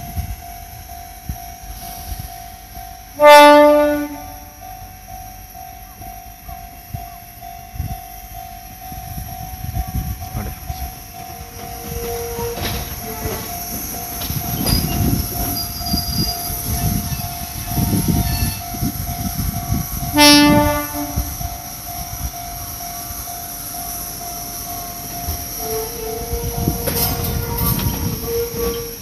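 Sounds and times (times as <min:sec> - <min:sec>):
train wheels rumbling on rails: 0:00.0 - 0:29.0
train horn blast: 0:03.2 - 0:04.5, 0:20.1 - 0:21.4.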